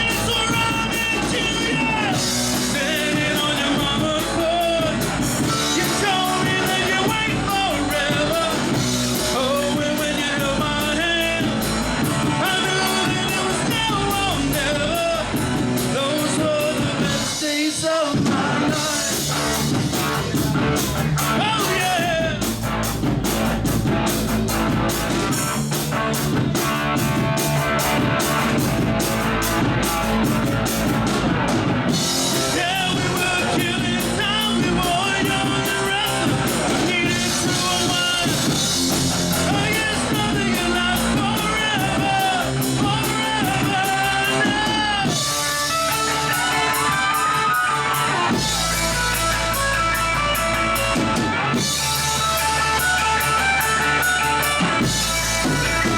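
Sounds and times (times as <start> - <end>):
person singing: 0.0 - 22.6, 31.9 - 49.9
drumming: 0.0 - 55.9
live rock band: 0.0 - 55.9.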